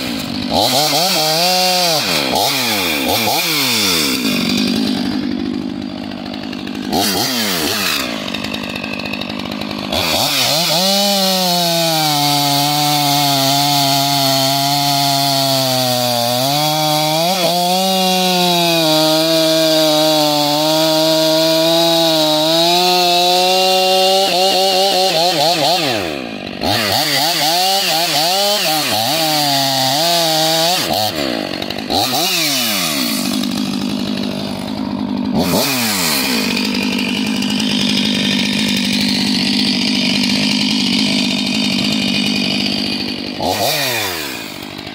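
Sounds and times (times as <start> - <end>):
chainsaw cutting wood: 0.0 - 44.9.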